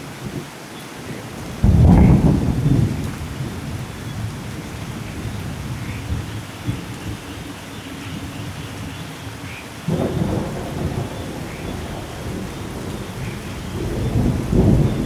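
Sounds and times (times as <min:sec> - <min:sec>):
steady rainfall: 0:00.0 - 0:15.0
loud low thunder rumble: 0:01.4 - 0:07.2, 0:09.9 - 0:15.0.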